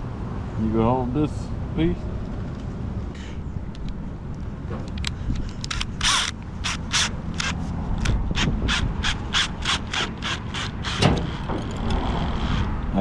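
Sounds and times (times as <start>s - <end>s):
ratchet wrench clicking: 5.0s - 12.0s.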